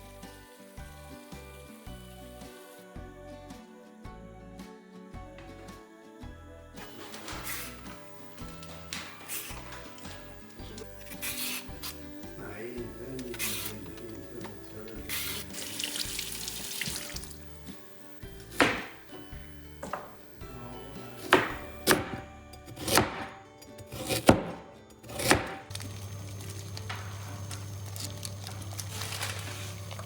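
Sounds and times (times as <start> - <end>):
background music: 0.0 - 30.0.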